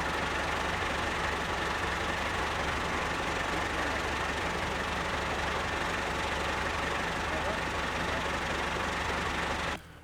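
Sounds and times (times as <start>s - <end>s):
engine idling: 0.0s - 9.8s.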